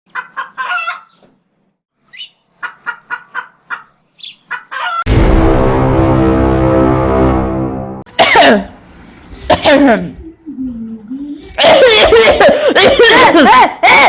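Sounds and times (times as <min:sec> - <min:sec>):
clucking fowl calls: 0:00.1 - 0:01.2, 0:02.5 - 0:05.0
loud music: 0:05.1 - 0:08.3.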